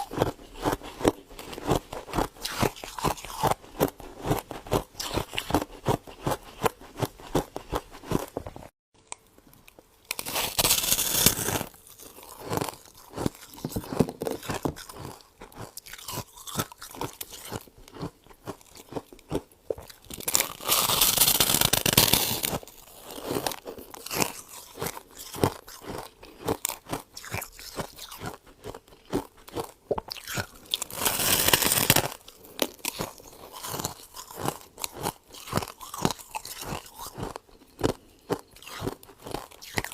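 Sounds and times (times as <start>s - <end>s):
crunching and chewing frost: 0.0s - 39.9s
frost scraped off freezer: 30.9s - 32.2s.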